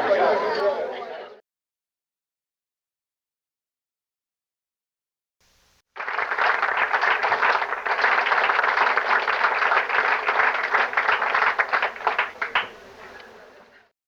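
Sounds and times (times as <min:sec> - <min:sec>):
audience applauding: 0:06.0 - 0:13.8.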